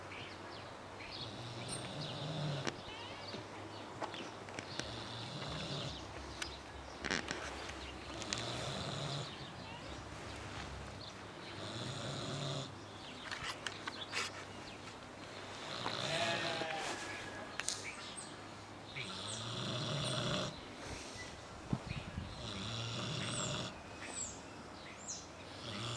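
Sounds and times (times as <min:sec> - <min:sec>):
pig snoring: 0:01.3 - 0:02.8, 0:04.7 - 0:06.2, 0:08.0 - 0:09.5, 0:11.5 - 0:12.8, 0:19.0 - 0:20.6, 0:22.3 - 0:23.8, 0:25.5 - 0:25.9.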